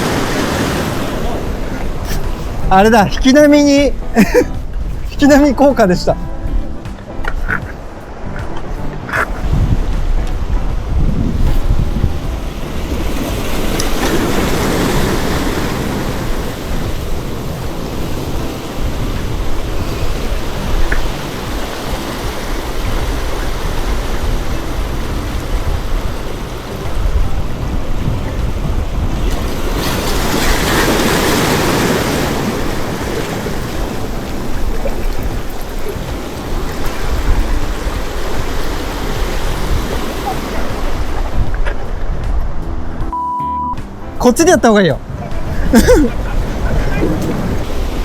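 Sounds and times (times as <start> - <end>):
sea waves washing on shore: 0.0 - 43.1, 44.2 - 48.0
wind on microphone: 0.0 - 43.1, 45.0 - 48.0.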